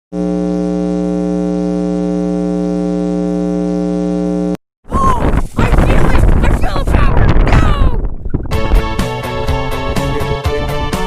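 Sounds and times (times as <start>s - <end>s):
low electronic buzz tone: 0.1s - 4.6s.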